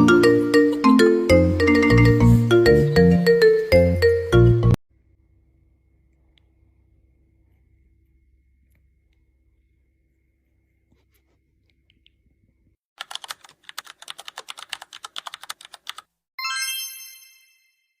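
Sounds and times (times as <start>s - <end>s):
rapid sharp clicks: 13.0s - 16.1s
bright multi-tone chime: 16.4s - 18.0s.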